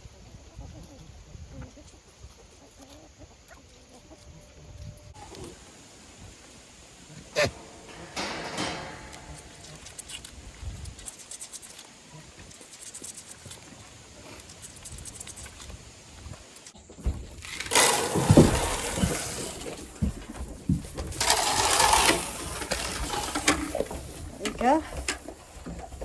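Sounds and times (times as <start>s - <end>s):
knocks: 7.4s - 10.0s
grain feed pouring into feeder: 7.4s - 10.3s, 17.3s - 20.0s, 21.1s - 25.2s.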